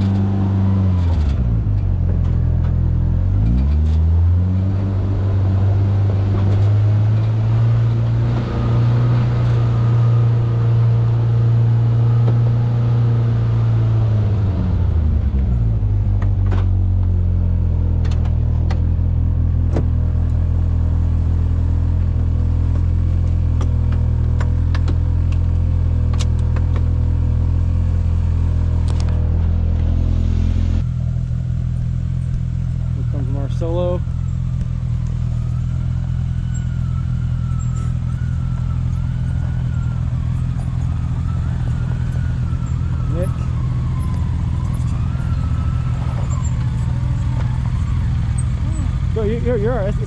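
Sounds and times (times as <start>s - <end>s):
off-road vehicle engine running: 0.0s - 50.0s.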